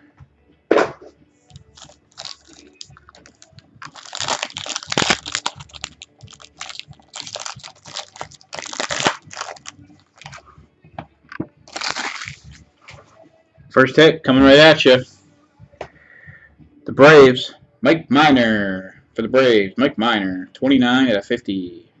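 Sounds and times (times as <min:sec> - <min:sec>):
cards shuffled by hand: 0:01.5 - 0:10.4, 0:11.7 - 0:12.6
card pack wrapper rustling: 0:01.6 - 0:10.4, 0:11.7 - 0:12.6.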